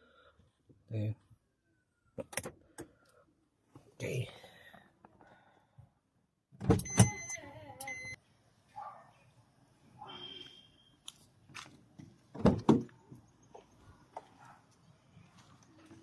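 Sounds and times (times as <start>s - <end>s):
short electronic beeps: 6.8s - 8.2s.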